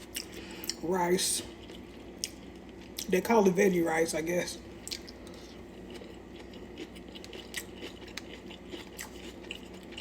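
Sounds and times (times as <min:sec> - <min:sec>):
person chewing: 0:00.0 - 0:03.2, 0:04.7 - 0:10.0
low room hum: 0:00.0 - 0:10.0.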